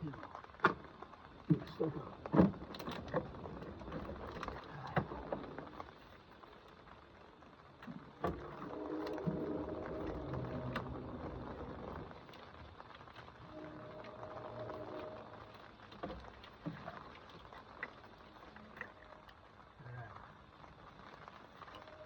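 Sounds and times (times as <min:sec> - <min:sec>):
steady low hum: 0:08.3 - 0:16.6.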